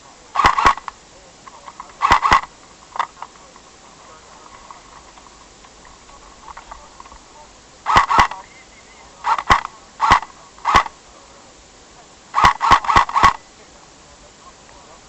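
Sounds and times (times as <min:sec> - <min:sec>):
airsoft gun shots: 0:00.4 - 0:01.0, 0:01.9 - 0:03.2, 0:07.9 - 0:08.4, 0:09.2 - 0:11.0, 0:12.3 - 0:13.5.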